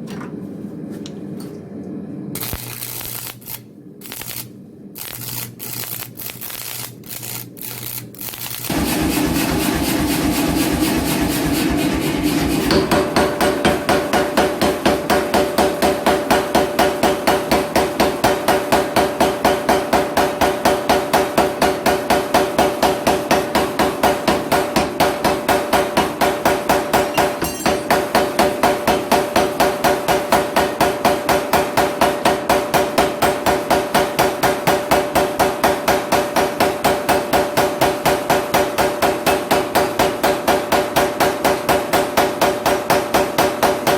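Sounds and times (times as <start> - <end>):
steady machine whir: 2.2 - 17.4
power hammer striking hot steel: 2.4 - 43.9.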